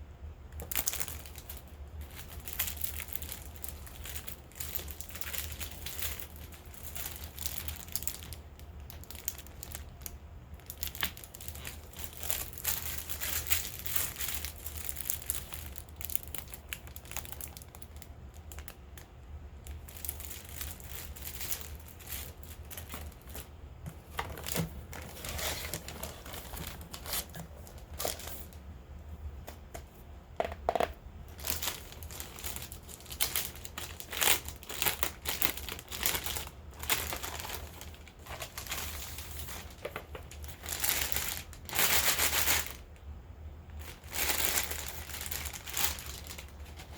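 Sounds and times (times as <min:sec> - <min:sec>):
packaging crinkling and rustling: 0:00.6 - 0:28.6, 0:29.4 - 0:43.0, 0:43.7 - 0:46.9.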